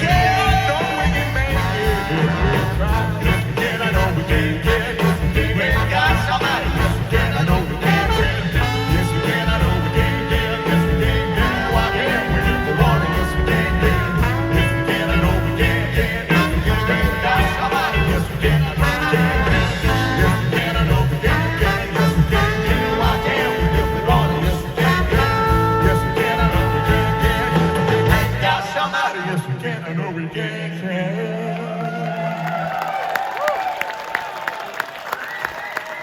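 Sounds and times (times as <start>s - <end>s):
drum and bass beat: 0.0s - 28.4s
held horn chords: 0.0s - 28.7s.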